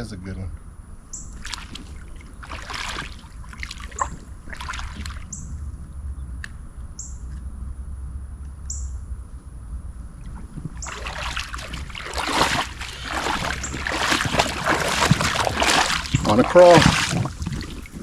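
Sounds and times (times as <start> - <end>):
bird chirping: 1.1 - 1.4, 5.2 - 6.3, 6.9 - 7.3, 8.7 - 9.0, 13.0 - 18.0
low rumble: 4.2 - 18.0.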